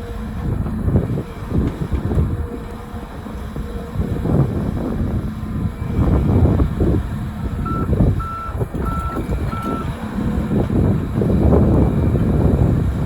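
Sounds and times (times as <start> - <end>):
excavator diesel engine: 0.0 - 13.0
reversing alarm beeps: 7.6 - 10.0.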